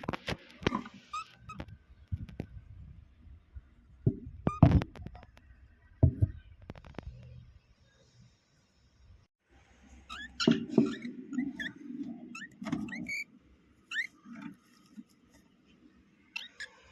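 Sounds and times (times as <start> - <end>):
cockatiel chirping: 10.1 - 13.2, 13.9 - 14.2, 16.3 - 16.9.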